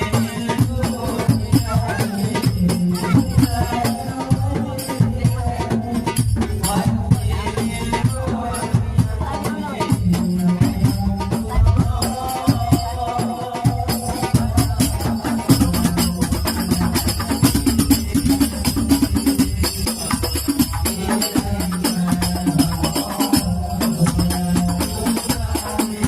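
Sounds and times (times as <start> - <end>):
frame drums beating: 0.0 - 26.0
jingling percussion: 0.0 - 26.0.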